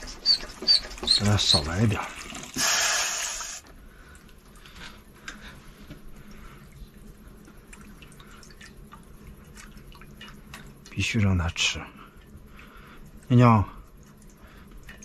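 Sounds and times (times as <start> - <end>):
water pouring: 0.9 - 3.6
faint drips: 3.6 - 15.0.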